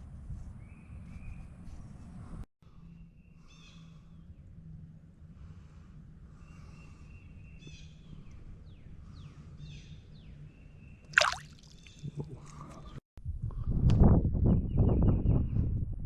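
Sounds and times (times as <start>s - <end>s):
steady low hum: 1.8s - 10.7s.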